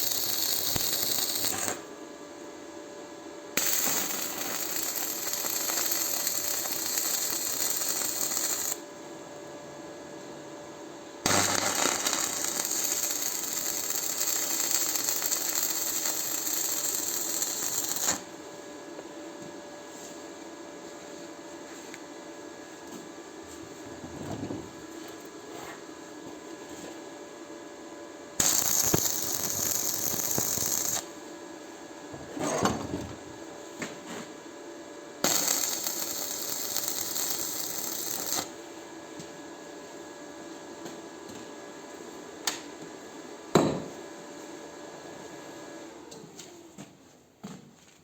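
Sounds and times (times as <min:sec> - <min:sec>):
welding arc hissing: 0:00.0 - 0:01.8, 0:03.6 - 0:08.8, 0:11.3 - 0:18.3, 0:28.4 - 0:31.1, 0:35.2 - 0:38.6
welder hum: 0:00.0 - 0:01.9, 0:03.5 - 0:09.0, 0:11.3 - 0:18.4, 0:28.4 - 0:31.2, 0:35.2 - 0:38.6.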